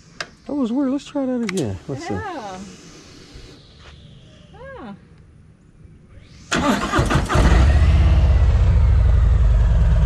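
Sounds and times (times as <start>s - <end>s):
electric starter cranking: 6.5s - 8.3s.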